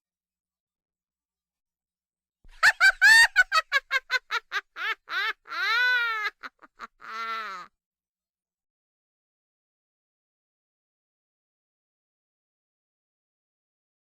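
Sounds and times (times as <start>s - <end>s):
witch cackle: 2.5s - 7.7s.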